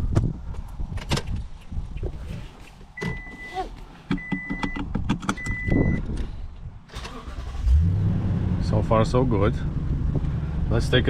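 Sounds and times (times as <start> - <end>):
dashboard warning chime beeping: 3.0 - 3.6, 4.2 - 4.8, 5.4 - 6.0.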